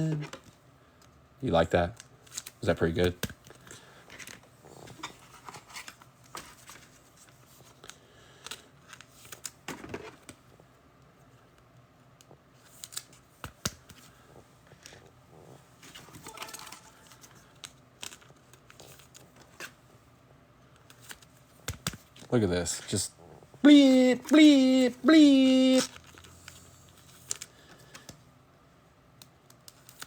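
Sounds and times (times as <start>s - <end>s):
cards and wrapper rustling: 15.9s - 19.8s.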